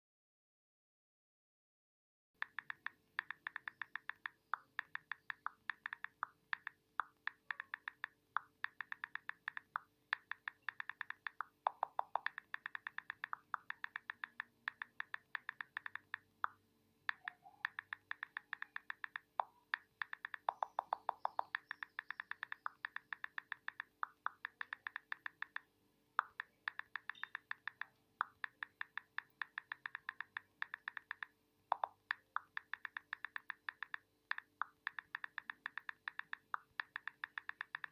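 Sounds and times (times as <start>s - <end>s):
lower-pitched clicks: 2.4s - 37.9s
phone keyboard key clicks: 2.4s - 37.9s.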